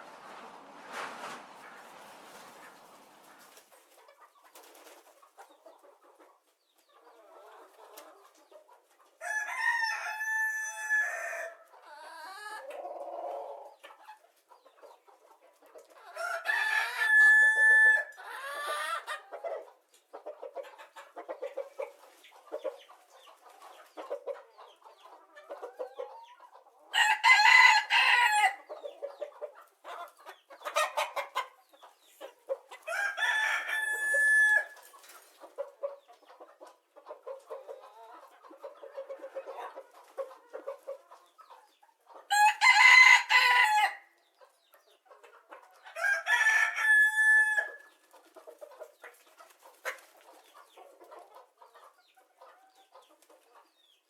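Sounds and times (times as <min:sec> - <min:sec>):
chicken clucking: 0:00.0 - 0:54.0
rooster crowing: 0:09.2 - 0:11.5, 0:16.2 - 0:18.1, 0:27.0 - 0:28.6, 0:32.9 - 0:34.8, 0:42.3 - 0:44.0, 0:46.0 - 0:47.8.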